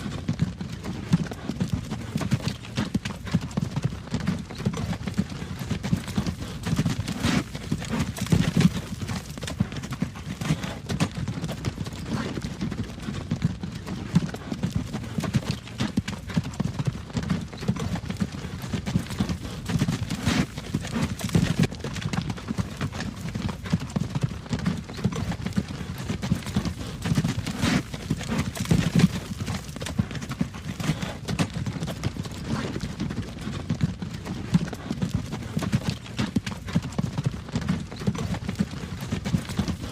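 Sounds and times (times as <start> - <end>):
horse hooves clip-clopping: 0.0 - 39.9
wagon rumbling: 26.4 - 30.1.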